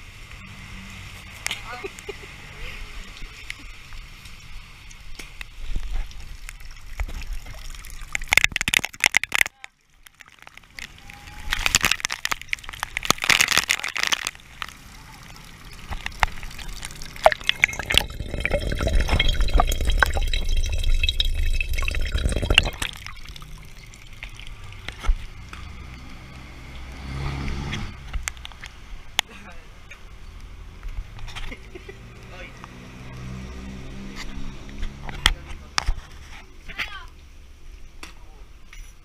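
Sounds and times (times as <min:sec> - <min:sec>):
rain: 0:00.0 - 0:38.7
water splashing and pouring: 0:02.8 - 0:28.2.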